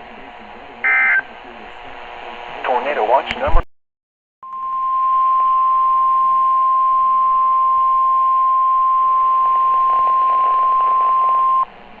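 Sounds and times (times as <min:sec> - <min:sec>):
faint radio hiss: 0:00.0 - 0:03.6
loud steady alarm tone: 0:00.8 - 0:01.2.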